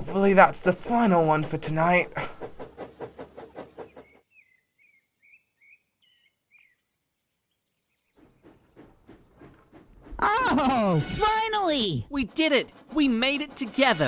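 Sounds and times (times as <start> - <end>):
faint bird chirps: 3.9 - 8.8
rhythmic noise: 10.2 - 14.0.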